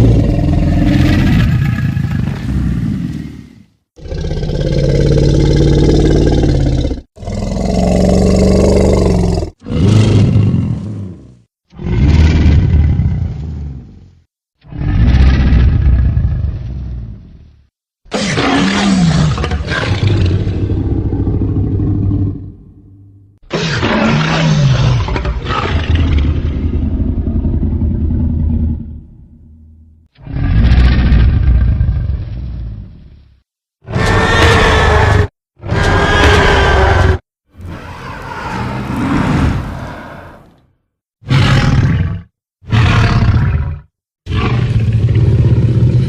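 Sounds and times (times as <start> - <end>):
monster roar: 0.0 - 11.2, 33.9 - 40.7
deep monster roars: 0.0 - 13.8, 18.1 - 29.6, 30.2 - 32.4, 33.8 - 46.0.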